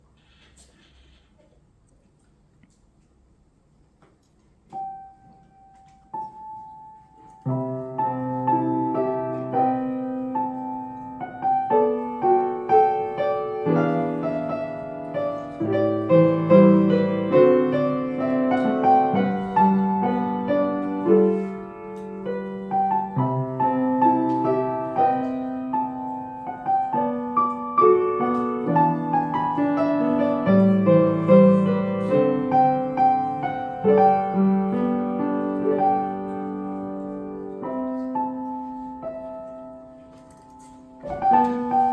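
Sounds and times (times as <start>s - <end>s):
solo piano piece: 4.6s - 41.9s.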